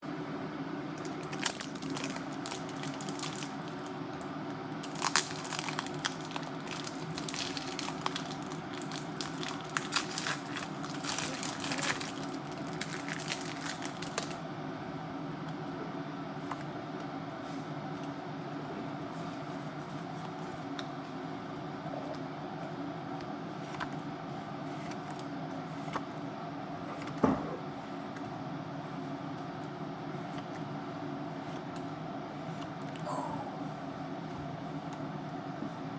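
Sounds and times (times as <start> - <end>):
steady low hum: 0.0 - 35.9
foil pack crinkling and tearing: 1.0 - 4.0, 4.7 - 14.4.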